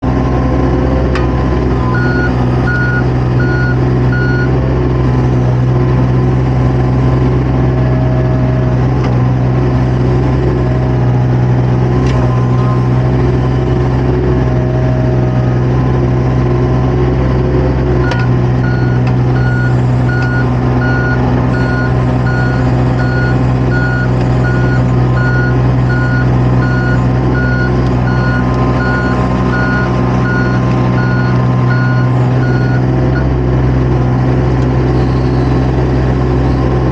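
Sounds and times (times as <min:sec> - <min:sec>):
diesel engine running: 0:00.0 - 0:36.9
backup alarm beeping: 0:01.9 - 0:04.5.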